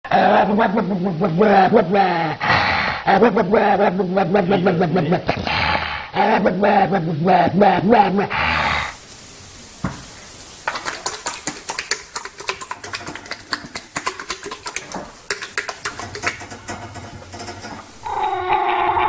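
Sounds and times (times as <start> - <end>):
animal making sharp clicks: 10.7 - 17.8.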